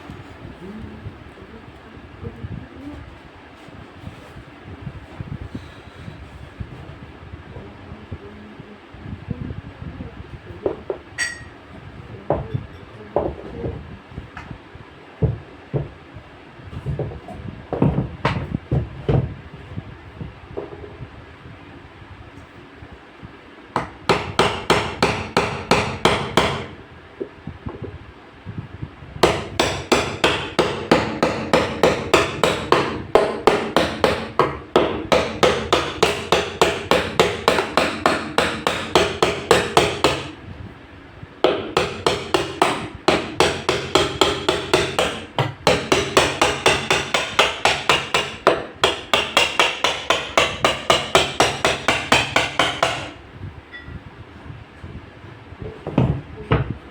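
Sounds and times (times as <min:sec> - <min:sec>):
hammer striking rapidly: 0:23.8 - 0:26.7, 0:29.2 - 0:40.3, 0:41.5 - 0:53.1.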